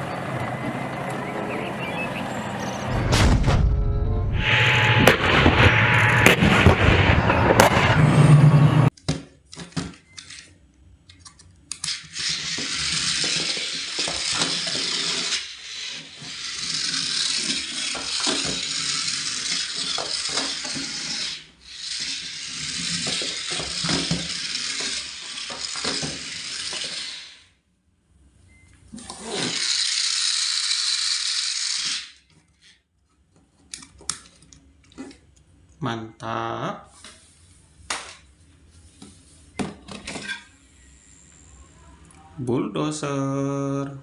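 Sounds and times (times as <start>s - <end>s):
loud burst of sound: 2.7s - 8.9s.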